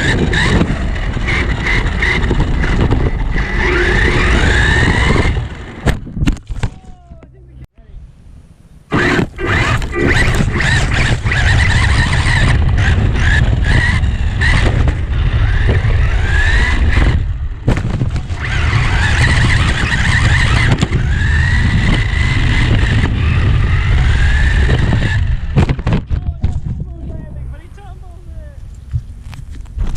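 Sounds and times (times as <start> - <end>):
electric motor whining: 0.0 - 5.8, 8.9 - 17.4, 18.1 - 25.9
tyre and wind rumble: 0.0 - 29.9.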